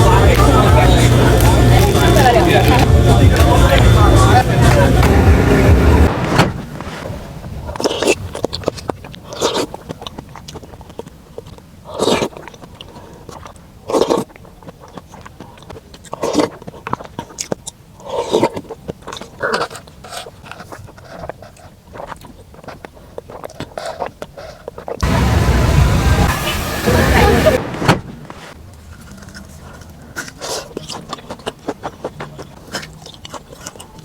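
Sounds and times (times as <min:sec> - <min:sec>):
louder bite sounds: 0:04.9 - 0:22.4
chewing with wet clicks: 0:07.6 - 0:25.0, 0:28.7 - 0:34.0.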